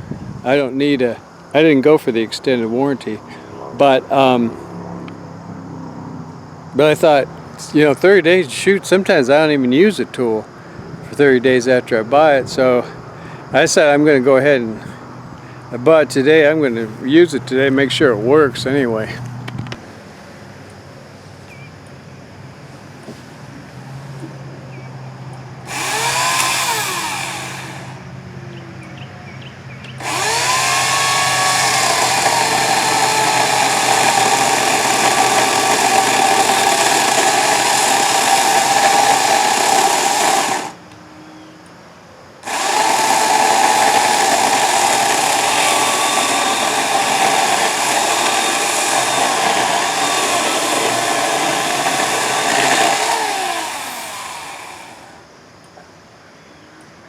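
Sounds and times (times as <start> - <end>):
electric chainsaw running: 25.7 - 28.0, 30.0 - 40.8, 42.4 - 55.3.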